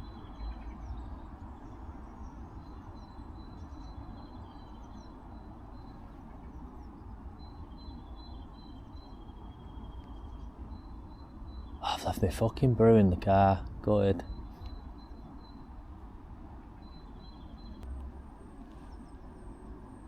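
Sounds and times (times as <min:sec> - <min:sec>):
small birds chirping: 0:00.0 - 0:16.0, 0:16.6 - 0:18.0
low steady rumble: 0:00.0 - 0:20.0.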